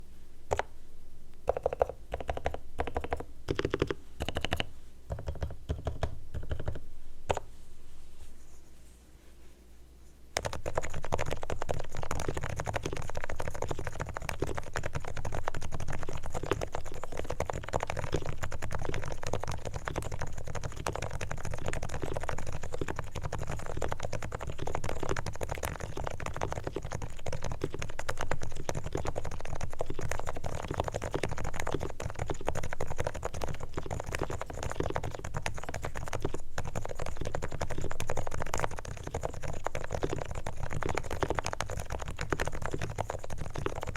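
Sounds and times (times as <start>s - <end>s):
fast typing on keyboard: 1.5s - 6.8s, 10.4s - 43.9s.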